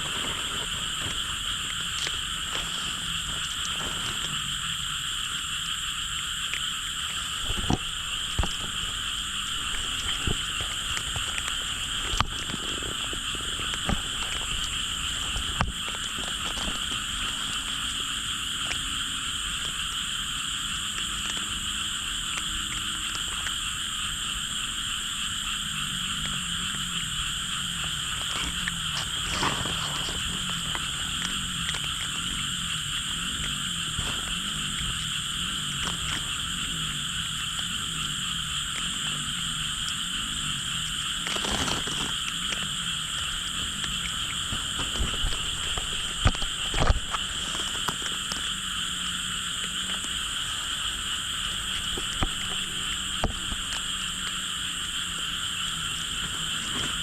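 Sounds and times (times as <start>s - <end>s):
chorus of frogs calling: 0.0s - 57.0s.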